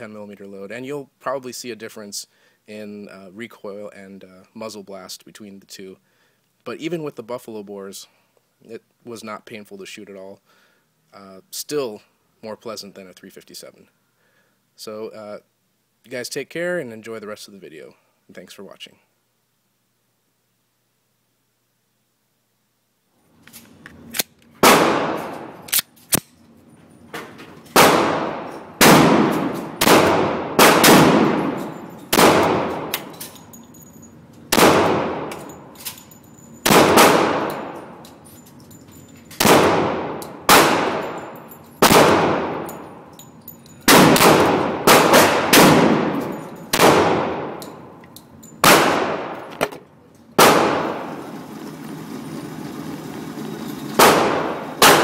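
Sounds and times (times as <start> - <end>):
pistol shots echoing: 24.6 - 25.7, 27.7 - 33.1, 34.5 - 35.8, 36.6 - 38.0, 39.4 - 43.0, 43.9 - 47.9, 48.6 - 49.7, 50.4 - 51.2, 53.9 - 55.0.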